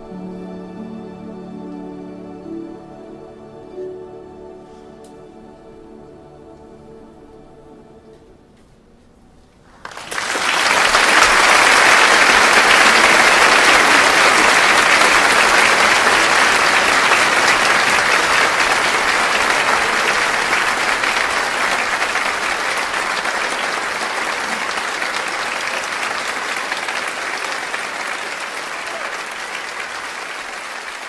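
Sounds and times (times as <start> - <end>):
audience applauding: 9.8 - 31.0.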